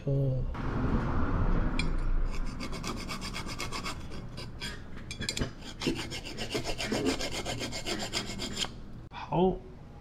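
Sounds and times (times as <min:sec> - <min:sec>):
hand file rasping on metal: 0:02.3 - 0:08.8.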